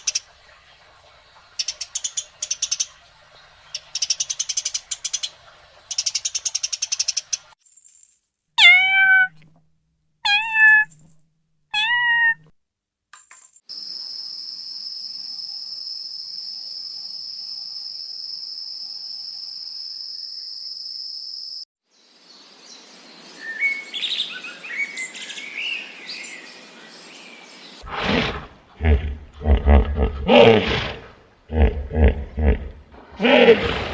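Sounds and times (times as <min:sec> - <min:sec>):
cat meowing: 0:08.6 - 0:09.4, 0:10.2 - 0:10.9, 0:11.8 - 0:12.4.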